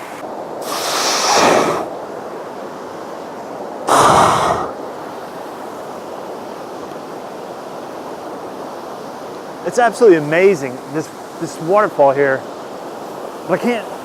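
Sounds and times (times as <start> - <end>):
waterfall rushing: 0.0 - 2.0, 3.9 - 5.1
wind blast on microphone: 0.0 - 2.1, 3.9 - 5.0.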